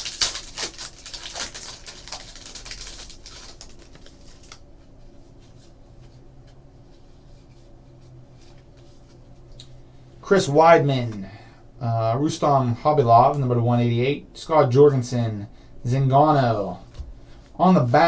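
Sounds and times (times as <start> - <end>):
foil card pack crinkling and tearing: 0.0 - 4.6
faint low hum: 0.0 - 18.0.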